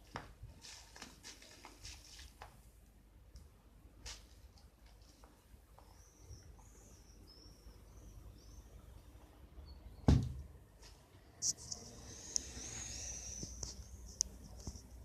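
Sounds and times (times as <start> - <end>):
faint high chirps: 5.8 - 10.1
sharp thump: 10.1 - 10.4.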